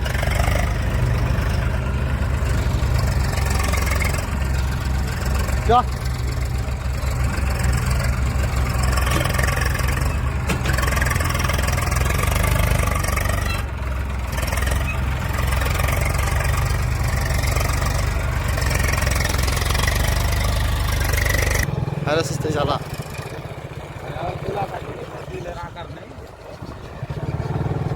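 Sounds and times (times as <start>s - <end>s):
diesel engine throbbing rumble: 0.0s - 27.9s.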